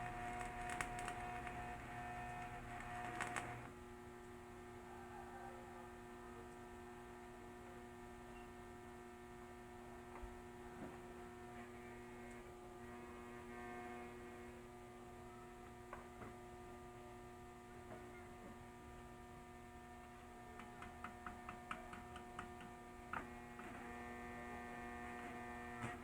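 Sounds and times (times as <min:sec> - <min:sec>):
welding machine humming: 0:00.0 - 0:03.8.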